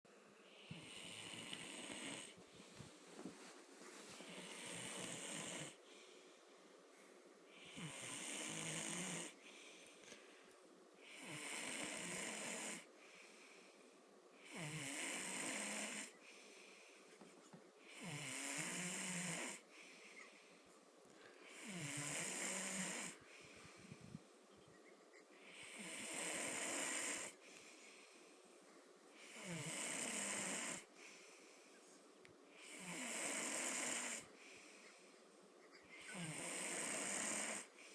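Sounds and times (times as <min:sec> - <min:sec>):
quiet breathing: 0:00.1 - 0:37.9
man snoring loudly: 0:00.7 - 0:02.3, 0:04.3 - 0:05.8, 0:07.6 - 0:09.4, 0:11.1 - 0:12.8, 0:14.4 - 0:16.1, 0:18.0 - 0:19.6, 0:21.5 - 0:23.2, 0:25.7 - 0:27.3, 0:29.3 - 0:30.8, 0:32.7 - 0:34.3, 0:36.1 - 0:37.7.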